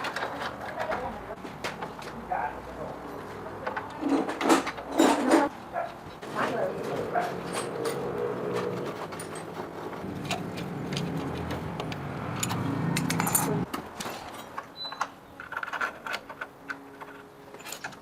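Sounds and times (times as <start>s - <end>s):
metal tools clinking: 3.7s - 5.5s, 6.8s - 11.3s, 12.3s - 18.0s.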